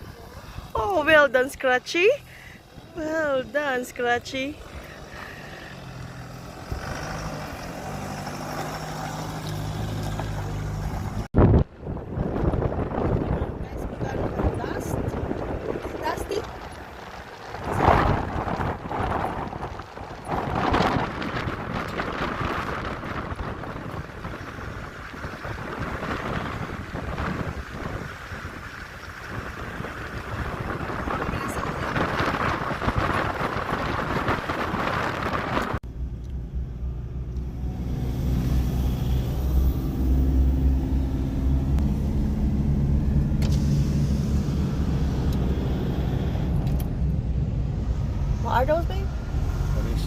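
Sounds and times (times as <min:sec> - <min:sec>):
engine humming: 0:00.0 - 0:50.0
vehicle rumbling on dirt track: 0:00.0 - 0:50.0
wind buffeting microphone: 0:09.8 - 0:35.8.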